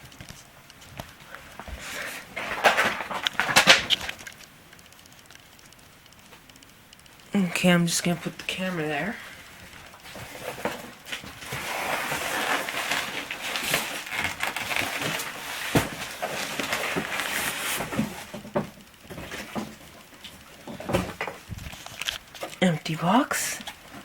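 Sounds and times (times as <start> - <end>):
clicks: 3.2 - 7.3
cardboard box rustling and scraping: 10.3 - 18.3.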